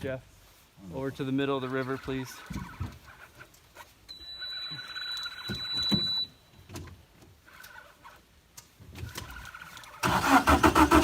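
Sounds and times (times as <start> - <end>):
boat motor cranking: 9.1 - 11.0.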